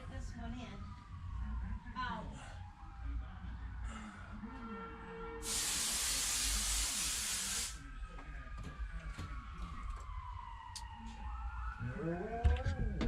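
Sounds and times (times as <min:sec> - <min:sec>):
loud even hiss: 0:05.4 - 0:07.8.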